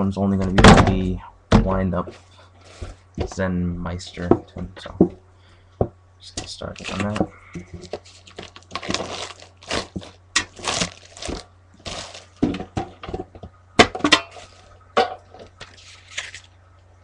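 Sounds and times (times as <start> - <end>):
plastic packaging crinkling: 6.7 - 12.6, 15.4 - 16.6.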